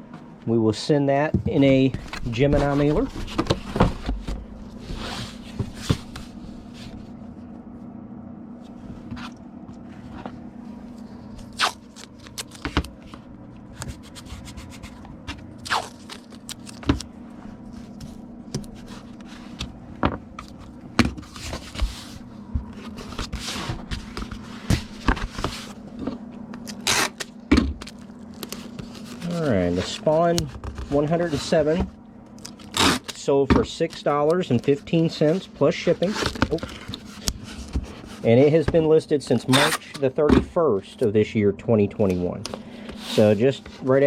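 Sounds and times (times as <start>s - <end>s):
low hum: 1.4s - 33.0s
cardboard and paper handling: 1.5s - 7.0s, 20.4s - 27.1s, 27.8s - 40.0s, 42.8s - 44.0s.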